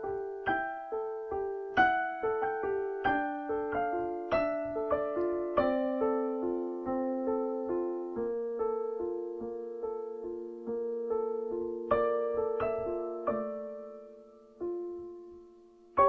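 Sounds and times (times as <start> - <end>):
slow solo piano: 0.0 - 16.0.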